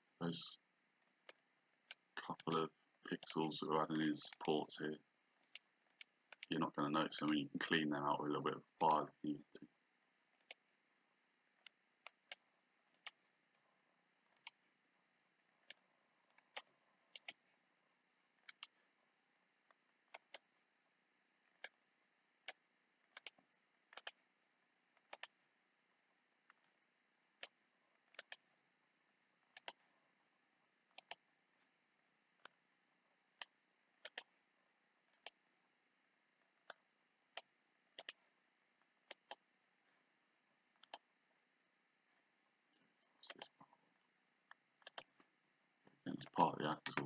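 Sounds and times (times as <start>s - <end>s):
faint computer mouse clicks: 40.8s - 41.1s.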